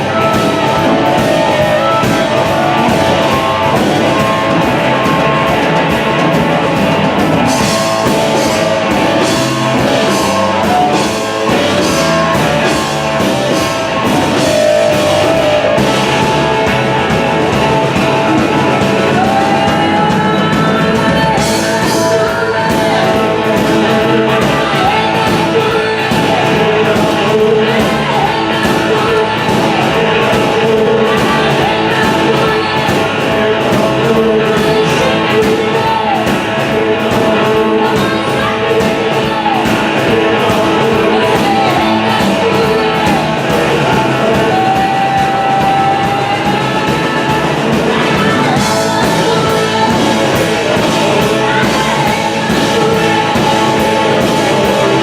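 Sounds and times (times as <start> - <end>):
bending electric guitar lead: 0.0 - 55.0
blues rock band playing: 0.0 - 55.0.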